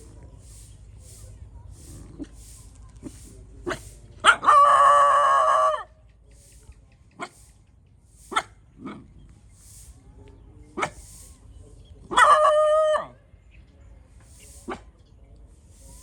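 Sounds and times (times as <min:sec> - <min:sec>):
dog barking: 0:03.6 - 0:05.9, 0:08.3 - 0:09.0, 0:12.1 - 0:13.2.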